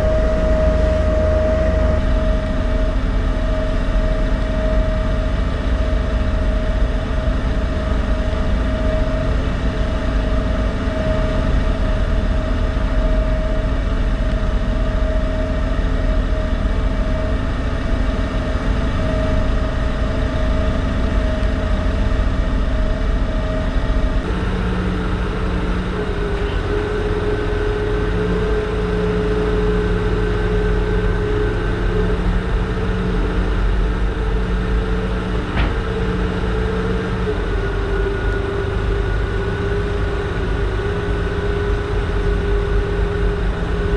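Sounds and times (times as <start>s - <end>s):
ferry engines droning: 0.0s - 43.9s
humming tones: 0.0s - 43.9s.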